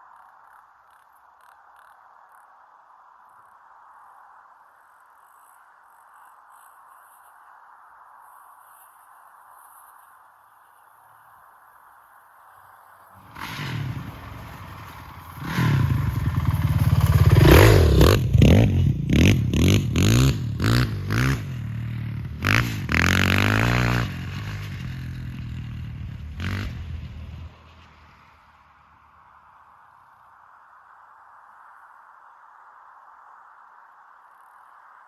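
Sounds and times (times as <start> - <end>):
quad engine revving: 13.2 - 27.6.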